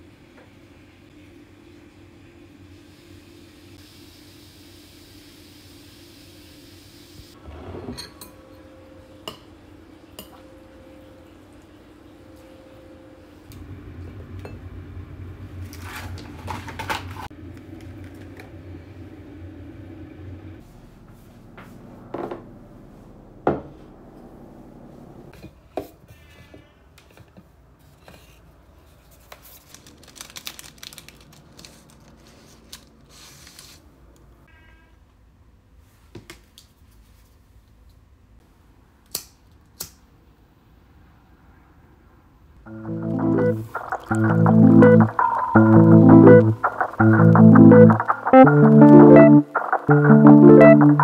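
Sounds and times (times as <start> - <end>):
low hum: 17.4 - 25.3, 42.7 - 51.0.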